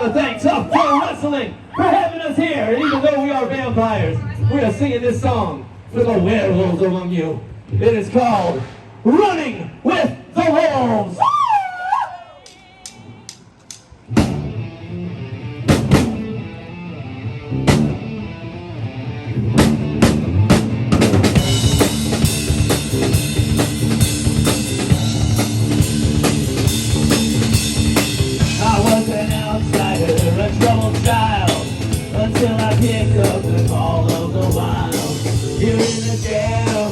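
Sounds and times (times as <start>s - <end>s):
full band with driving drum beat: 14.0s - 14.7s, 15.6s - 16.5s, 17.6s - 18.2s, 19.4s - 36.9s
drum hits: 21.0s - 36.9s.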